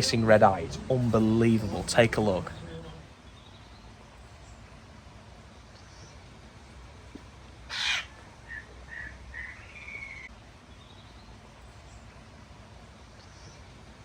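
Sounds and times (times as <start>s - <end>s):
bird screeching: 7.7s - 10.3s.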